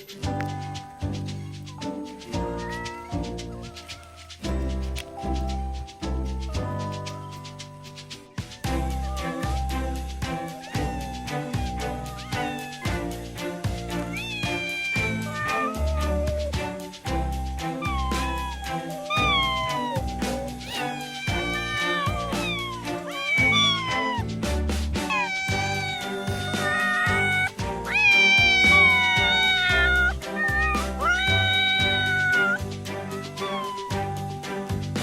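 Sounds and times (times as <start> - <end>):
background music with beat: 0.0 - 35.0
cat meowing: 2.3 - 4.4, 8.4 - 24.4, 25.0 - 34.4.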